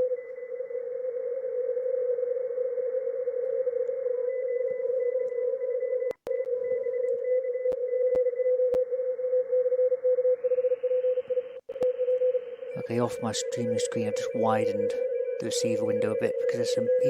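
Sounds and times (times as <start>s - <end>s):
faint higher morse tones: 0.0s - 17.0s
morse code tone: 10.7s - 17.0s
radio band hiss: 12.7s - 17.0s.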